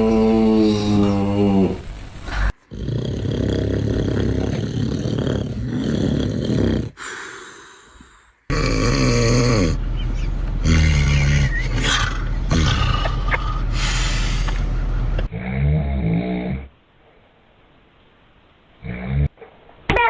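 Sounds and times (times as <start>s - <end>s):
loud snoring: 0.0s - 7.3s, 8.5s - 9.9s, 10.6s - 14.6s.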